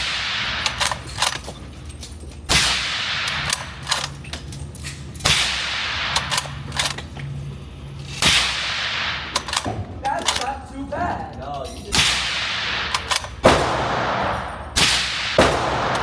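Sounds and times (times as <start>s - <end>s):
suppressed rifle shots: 2.5s - 4.1s, 5.2s - 7.0s, 8.2s - 9.7s, 12.0s - 16.0s
rifle bolt clicks: 2.6s - 4.2s, 6.0s - 7.1s, 12.0s - 16.0s.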